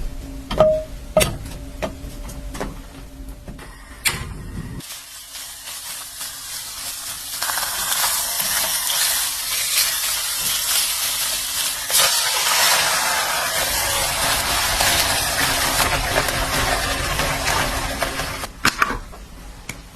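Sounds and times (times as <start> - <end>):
food sizzling in a frying pan: 4.8 - 18.5.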